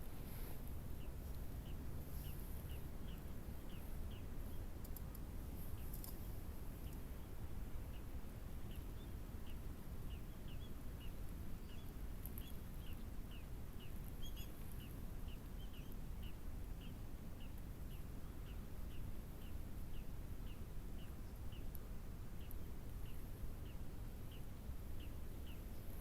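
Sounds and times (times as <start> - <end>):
bird chirping: 8.7 - 21.7.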